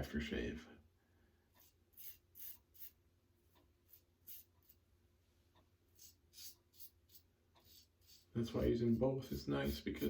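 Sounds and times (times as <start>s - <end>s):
safety razor scraping stubble: 6.0s - 8.7s.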